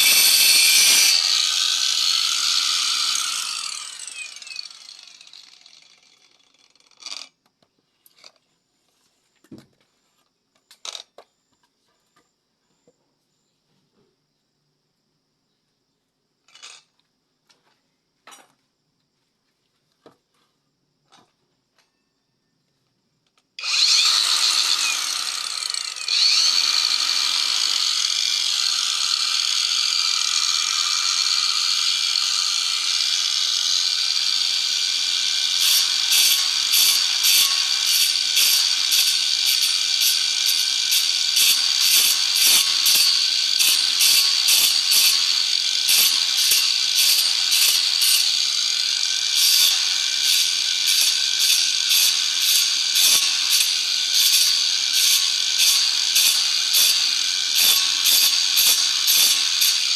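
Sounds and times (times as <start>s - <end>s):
power tool whining: 0.0s - 7.4s, 23.6s - 59.9s.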